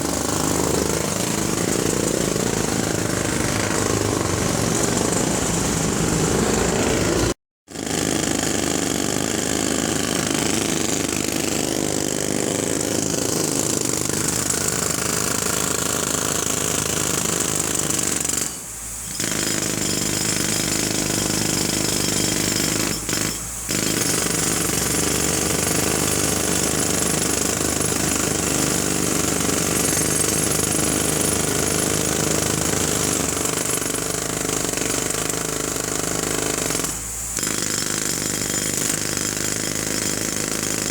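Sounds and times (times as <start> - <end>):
jackhammer pounding: 0.0 - 40.9.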